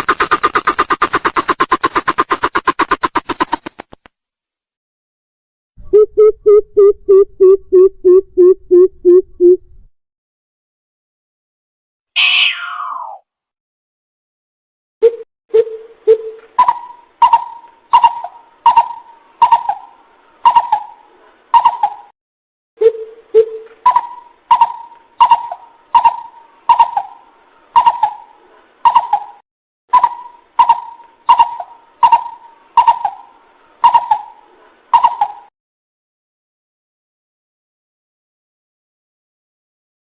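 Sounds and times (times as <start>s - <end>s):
bird hooting: 22.8s - 27.2s, 27.8s - 35.5s.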